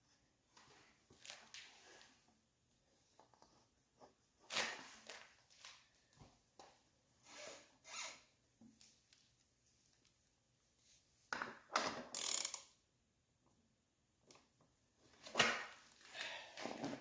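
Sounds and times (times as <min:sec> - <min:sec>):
ratchet clicking and clatter: 0:12.1 - 0:12.7.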